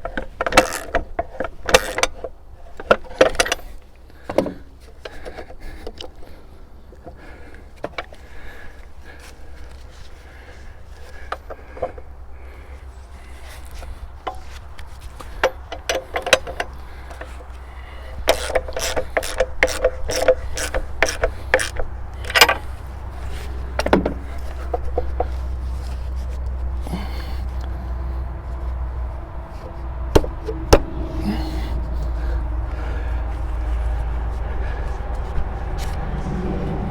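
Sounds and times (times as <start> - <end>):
hand tools clicking on metal: 0.0 - 6.2, 14.2 - 27.9
steady low hum: 2.4 - 36.9
sharp knocks: 30.1 - 31.4.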